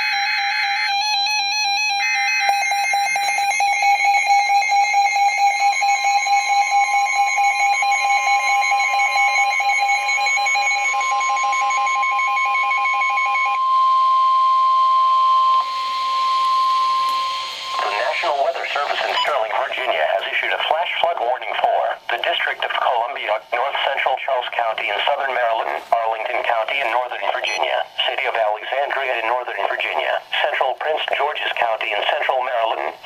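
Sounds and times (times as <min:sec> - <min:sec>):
steady warning alarm tone: 0:00.0 - 0:20.9
warbling data-burst tones: 0:15.4 - 0:21.1.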